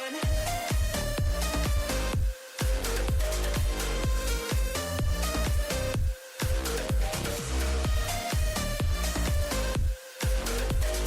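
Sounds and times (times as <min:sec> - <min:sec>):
kick drum beat: 0:00.2 - 0:11.0.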